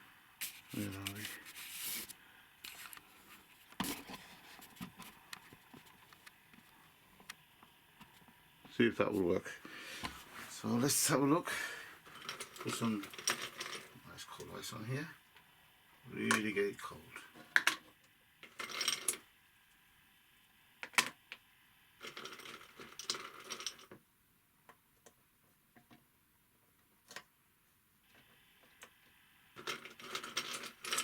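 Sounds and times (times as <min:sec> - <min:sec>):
ice cubes clinking on metal plate: 0:12.1 - 0:14.0, 0:18.4 - 0:19.2, 0:22.0 - 0:23.9, 0:29.6 - 0:31.0.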